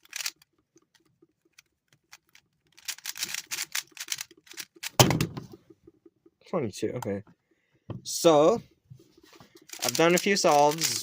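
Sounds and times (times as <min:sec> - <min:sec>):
puzzle cube clicking: 0:00.0 - 0:05.0, 0:09.7 - 0:11.0.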